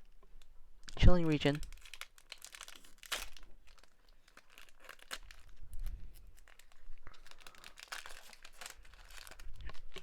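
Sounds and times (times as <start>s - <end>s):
foil wrapper crinkling and tearing: 0.9s - 10.0s.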